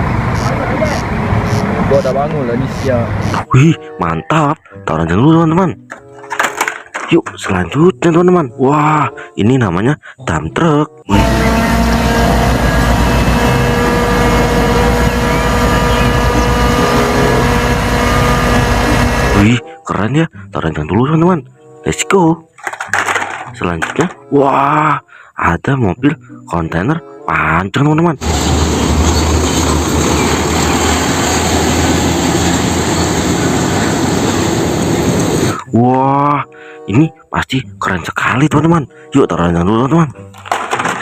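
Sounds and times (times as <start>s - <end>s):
dump truck engine droning: 0.0s - 3.4s, 11.1s - 19.5s, 28.2s - 35.7s
road noise: 0.0s - 4.0s, 11.1s - 19.5s, 28.2s - 35.7s.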